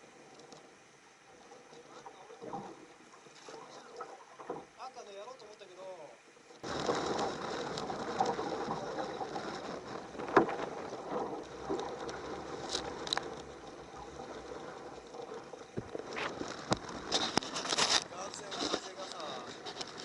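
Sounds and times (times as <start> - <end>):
water sloshing against kayak hull: 0.0 - 20.0
wind: 0.0 - 20.0.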